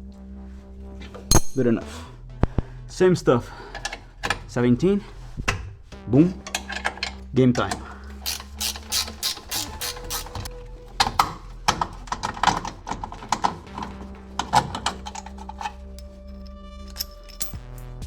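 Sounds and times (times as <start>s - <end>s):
ratchet wrench clicking: 8.1s - 10.5s.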